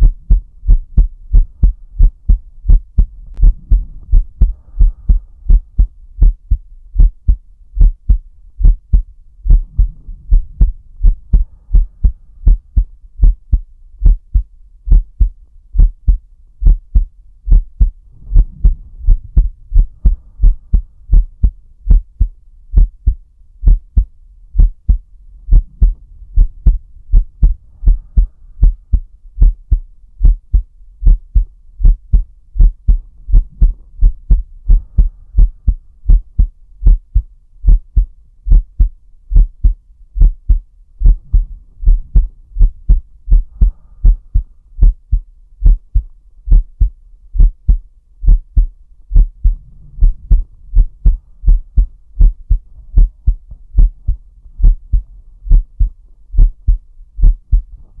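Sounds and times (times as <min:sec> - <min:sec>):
soft slow breath: 0:00.0 - 0:06.4, 0:08.9 - 0:13.0, 0:16.1 - 0:21.6, 0:24.9 - 0:29.6, 0:32.9 - 0:36.4, 0:41.0 - 0:45.2, 0:48.6 - 0:58.0
heartbeat thumps: 0:00.0 - 0:58.0.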